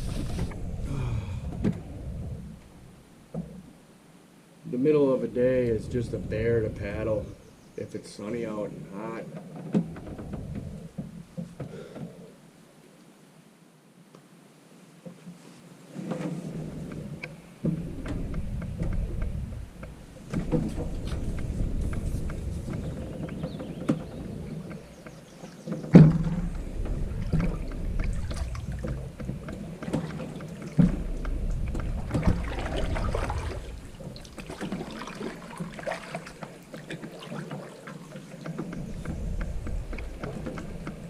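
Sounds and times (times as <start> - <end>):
paddle knocking canoe hull: 0.0 - 3.7, 8.2 - 12.2, 16.0 - 41.0
paddle swishing through water: 0.0 - 3.7, 5.4 - 12.4, 15.0 - 41.0.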